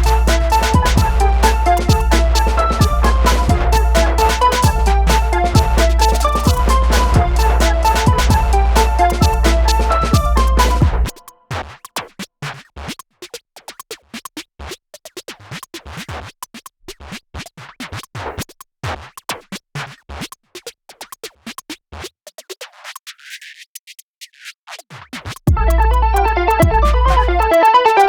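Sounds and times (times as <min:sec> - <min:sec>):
electronic music with stuttering hits: 0:00.0 - 0:11.2, 0:25.5 - 0:28.0.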